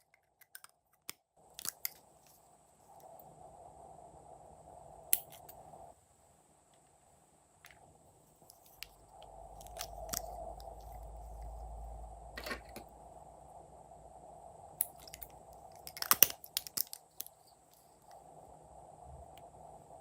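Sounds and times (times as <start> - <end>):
sticky slime clicks and crackles: 14.8 - 17.4.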